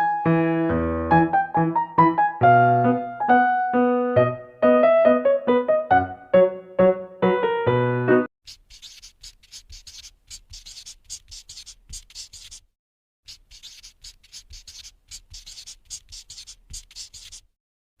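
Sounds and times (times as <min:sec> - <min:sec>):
oil pastel scratching on paper: 0:08.5 - 0:17.6.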